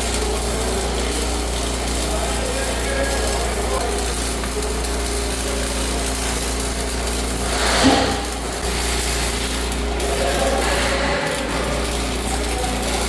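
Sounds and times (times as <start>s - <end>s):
power equipment running: 0.0s - 13.0s.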